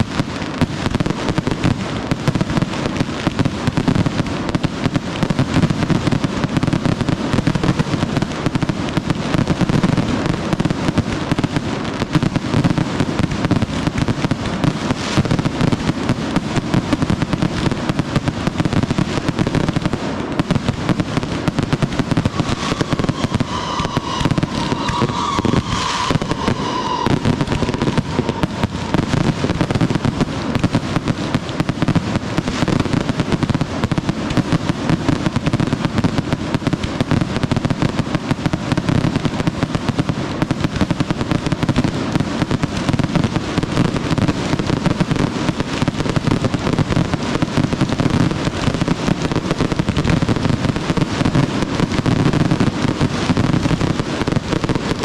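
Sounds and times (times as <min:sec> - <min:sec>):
fireworks bangs and crackles: 0:00.0 - 0:55.0
high-pitched tone: 0:21.9 - 0:30.3.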